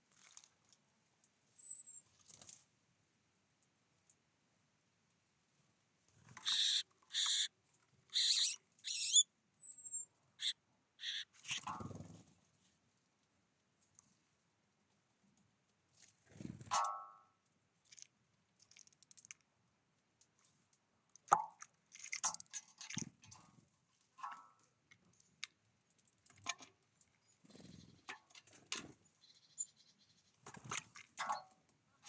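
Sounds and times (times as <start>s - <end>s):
birds pecking and cracking seeds: 0.1s - 1.4s, 2.0s - 2.7s, 6.2s - 9.2s, 10.4s - 12.3s, 17.8s - 19.5s, 20.2s - 31.5s
short bird calls: 6.4s - 7.5s, 8.1s - 11.7s.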